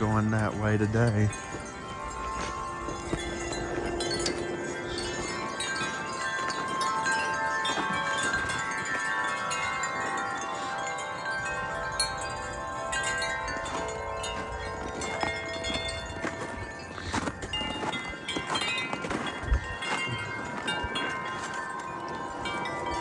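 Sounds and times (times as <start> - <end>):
low rumble of wind: 0.0 - 23.0
wind chimes ringing: 0.0 - 23.0.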